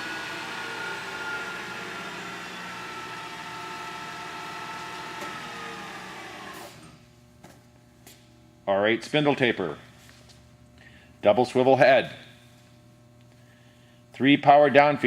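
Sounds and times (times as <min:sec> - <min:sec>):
milling machine running down: 0:00.0 - 0:07.0.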